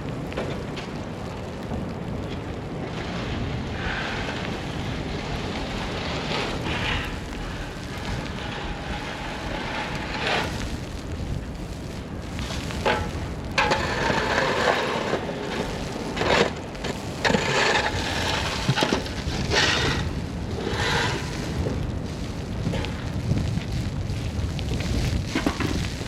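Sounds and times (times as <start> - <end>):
wind hiss: 0.0 - 26.0
slush: 3.8 - 10.7, 12.5 - 21.8.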